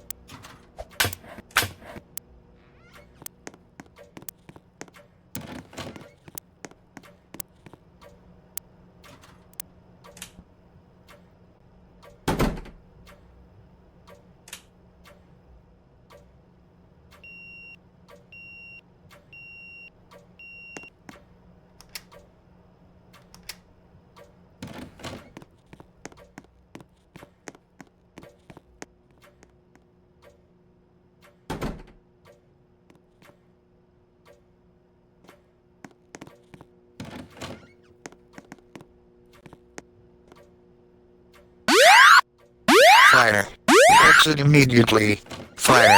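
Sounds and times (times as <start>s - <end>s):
short high electronic beeps: 41.7s - 45.9s.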